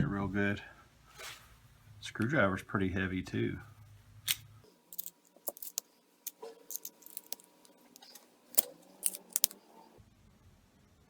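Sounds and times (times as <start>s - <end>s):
metal hand tools clicking: 4.3s - 9.6s.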